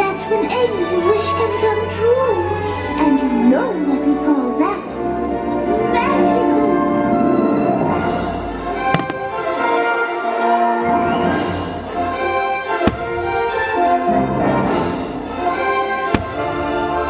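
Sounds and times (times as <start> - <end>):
orchestral music with brass: 0.0 - 17.0
firework bangs: 8.8 - 9.8, 12.7 - 13.8, 16.0 - 17.0.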